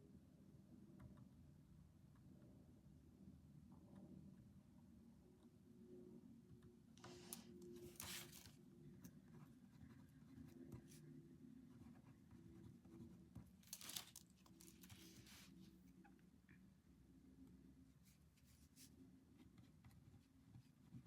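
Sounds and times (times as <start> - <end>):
paper rustling: 7.1 - 8.6, 13.6 - 15.6.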